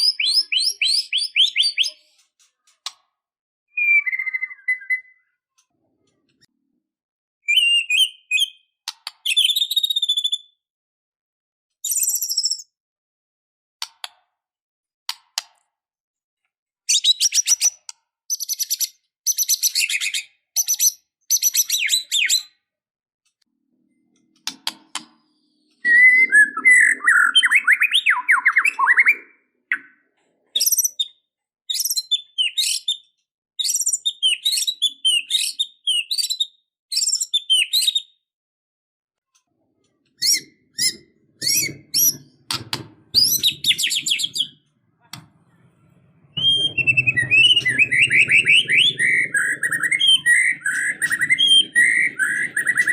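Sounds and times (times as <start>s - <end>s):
songbird singing whistled phrases: 0.0s - 2.2s, 3.7s - 5.4s, 7.4s - 10.6s, 11.8s - 12.8s, 16.9s - 22.6s, 25.4s - 30.0s, 30.6s - 38.2s, 40.2s - 44.6s, 46.4s - 52.9s.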